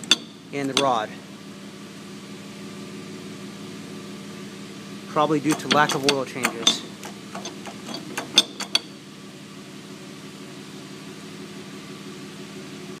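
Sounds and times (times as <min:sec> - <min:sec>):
sharp clicks and knocks: 0:00.0 - 0:01.0, 0:05.4 - 0:09.0
steady low hum: 0:00.0 - 0:11.8.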